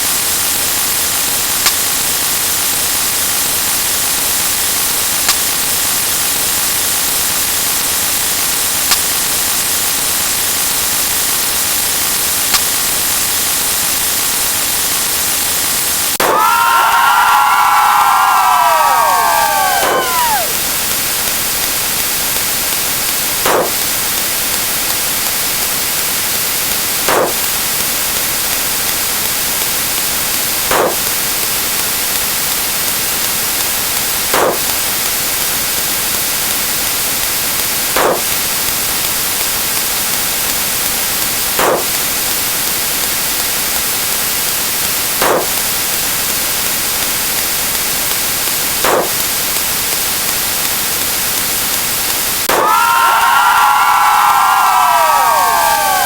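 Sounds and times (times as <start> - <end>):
static hiss: 0.0 - 56.0
short rising blip: 23.5 - 23.8, 27.1 - 27.5, 30.7 - 31.1, 34.4 - 34.7, 38.0 - 38.4, 41.6 - 42.0, 45.2 - 45.6, 48.9 - 49.2.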